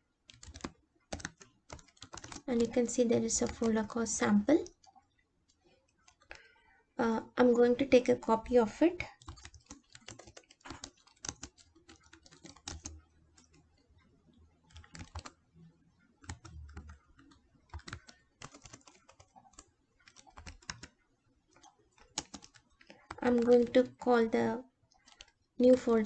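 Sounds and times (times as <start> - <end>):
computer keyboard typing: 0.2 - 6.5, 7.4 - 26.0.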